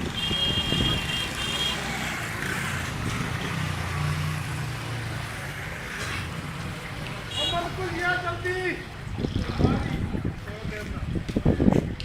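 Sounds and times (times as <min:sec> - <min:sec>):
wind blowing hard: 0:09.0 - 0:12.0.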